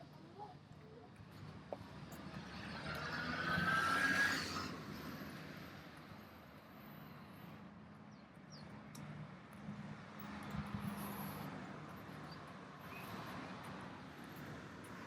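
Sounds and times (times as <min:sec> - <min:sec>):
vehicle passing by: 0:02.3 - 0:05.3.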